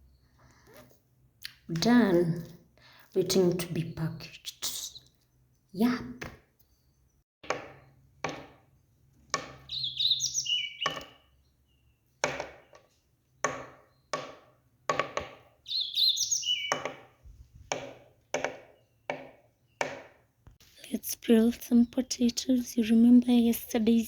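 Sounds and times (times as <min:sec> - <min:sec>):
bird chirping: 0:03.2 - 0:07.2, 0:09.6 - 0:14.2, 0:15.6 - 0:17.4, 0:18.6 - 0:19.9
sharp knocks like chopping: 0:07.4 - 0:08.6, 0:09.3 - 0:09.7, 0:10.8 - 0:11.2, 0:12.2 - 0:12.8, 0:13.4 - 0:15.5, 0:16.7 - 0:20.2.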